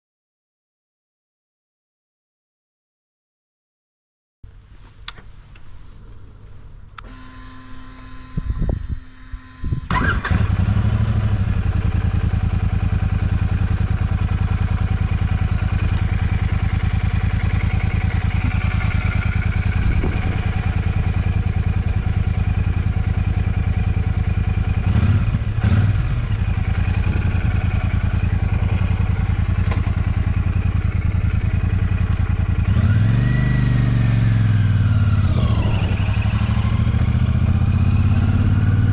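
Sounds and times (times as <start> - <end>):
faint steady whine: 4.5 - 9.9
motorcycle engine revving: 7.1 - 38.9
motorcycle engine idling: 9.9 - 38.1.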